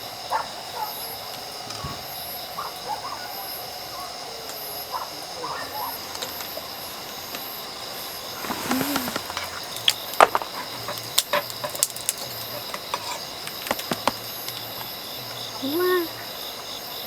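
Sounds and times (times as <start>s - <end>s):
light hiss: 0.0s - 15.0s
crickets chirping: 0.0s - 17.0s
sharp clicks and pops: 8.6s - 12.8s.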